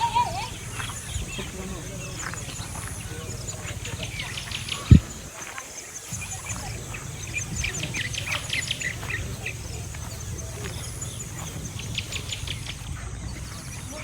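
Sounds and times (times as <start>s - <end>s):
flock of birds squawking: 0.0s - 14.0s.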